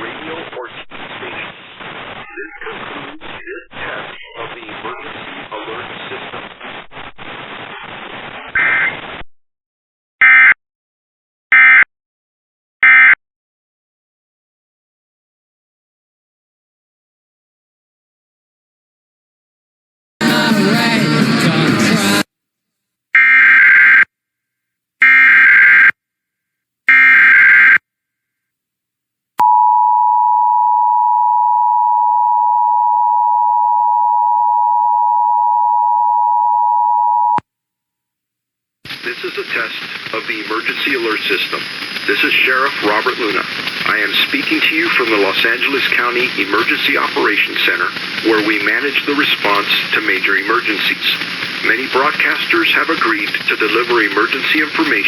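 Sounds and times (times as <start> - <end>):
radio hiss: 0.0 - 9.2, 38.8 - 55.0.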